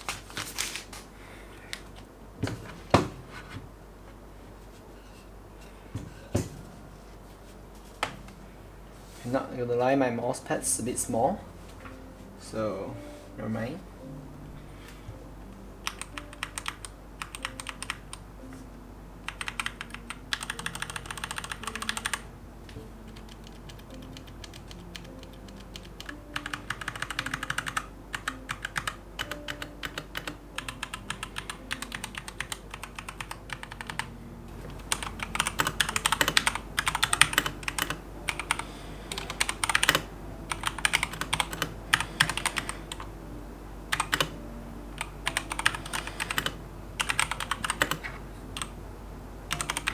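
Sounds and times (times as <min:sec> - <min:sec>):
typing on mechanical keyboard: 0:15.9 - 0:18.1, 0:19.3 - 0:22.2, 0:23.1 - 0:34.1, 0:34.8 - 0:43.1, 0:43.9 - 0:44.4, 0:45.0 - 0:48.7, 0:49.5 - 0:49.9.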